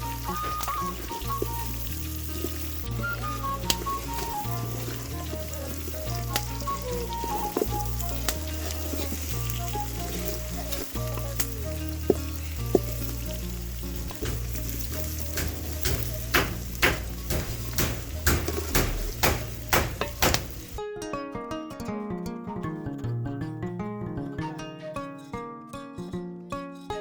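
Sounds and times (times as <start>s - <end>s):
background music with bass: 0.0s - 20.8s
food sizzling in oil: 0.0s - 20.8s
stirring in a pot: 0.0s - 20.8s
sharp knocks: 15.3s - 20.7s.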